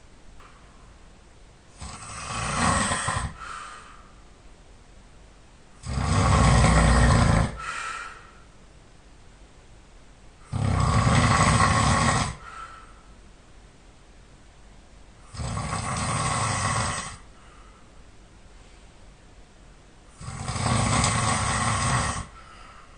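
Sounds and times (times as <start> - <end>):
man snoring: 1.8 - 3.4, 5.8 - 7.7, 10.5 - 12.4, 15.3 - 17.3, 20.2 - 22.4.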